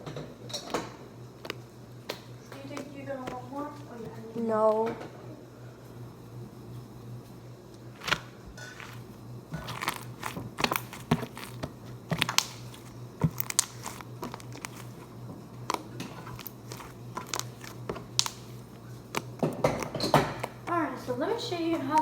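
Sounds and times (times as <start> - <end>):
low steady hum: 0.0 - 22.0
slime clicking and crackling: 1.4 - 4.1, 7.9 - 22.0.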